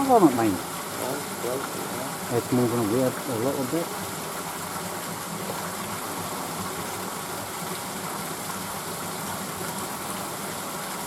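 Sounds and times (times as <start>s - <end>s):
water rushing over weir: 0.0s - 11.0s.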